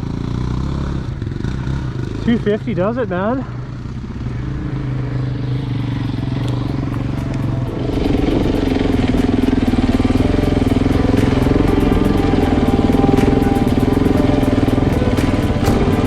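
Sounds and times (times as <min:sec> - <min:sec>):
motorcycle engine running: 0:00.0 - 0:16.0
rapid light ticking: 0:05.4 - 0:16.0.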